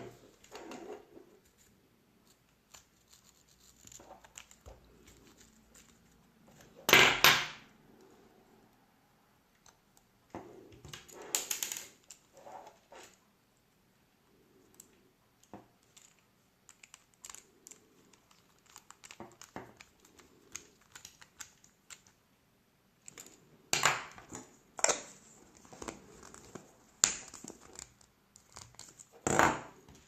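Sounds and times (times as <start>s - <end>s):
crinkly rustles: 0.1s - 6.8s, 15.7s - 22.2s.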